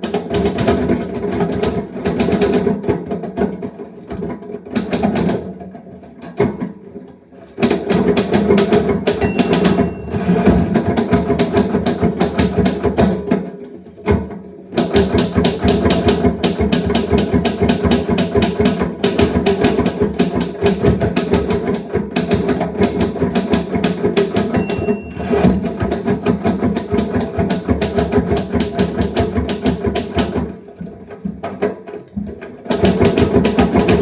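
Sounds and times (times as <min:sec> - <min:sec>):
typewriter bell ding: 0:09.2 - 0:10.5, 0:24.5 - 0:25.7.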